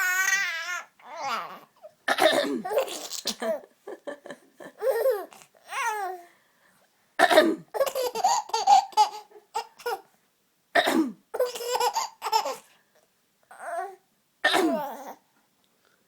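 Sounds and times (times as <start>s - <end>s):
woman coughing: 2.1s - 3.6s, 7.2s - 8.0s, 10.8s - 11.5s, 14.5s - 14.9s
baby laughing: 2.6s - 3.7s, 4.7s - 6.1s, 7.8s - 10.1s, 11.4s - 12.6s.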